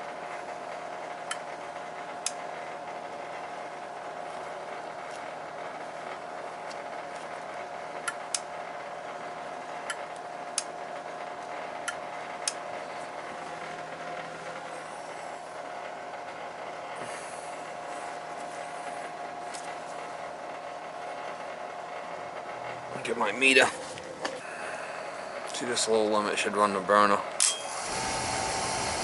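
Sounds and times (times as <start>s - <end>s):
boiler burner humming: 0.0s - 29.0s.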